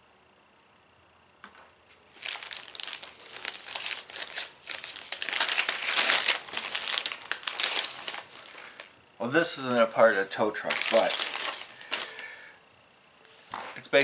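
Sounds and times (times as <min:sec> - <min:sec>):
plastic crinkling and rustling: 0:02.0 - 0:09.0, 0:09.6 - 0:12.4.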